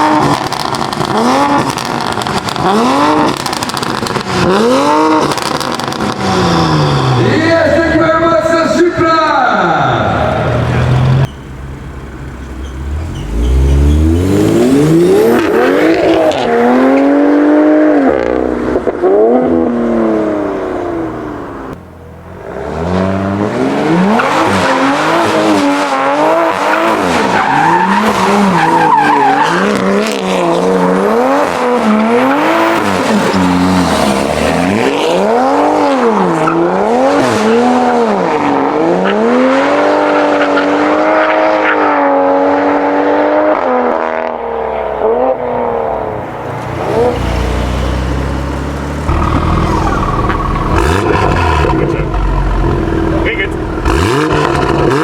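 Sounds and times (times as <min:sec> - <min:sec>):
car engine revving: 0:00.0 - 0:08.8, 0:09.6 - 0:55.0
tyres squealing: 0:10.7 - 0:16.3, 0:26.6 - 0:31.0, 0:48.0 - 0:54.9.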